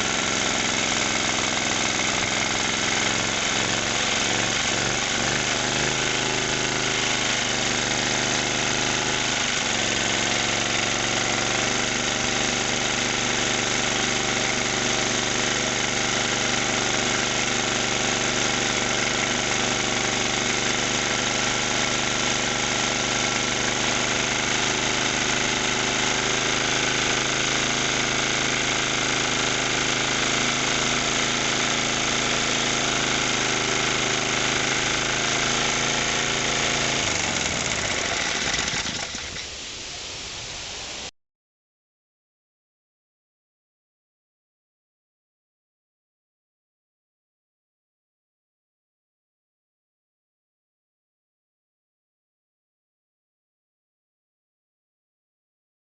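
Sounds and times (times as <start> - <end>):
small engine running: 0.0 - 39.6.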